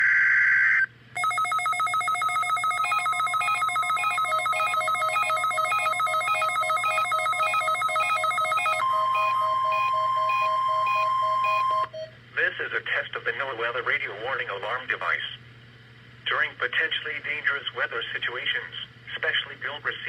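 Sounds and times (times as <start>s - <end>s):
fast-pulsing electronic alert beeps: 1.2s - 12.1s
steady single alarm tone: 1.2s - 12.1s.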